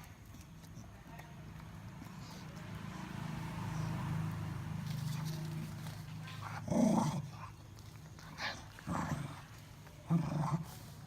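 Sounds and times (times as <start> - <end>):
dog growling while eating: 5.2 - 11.0.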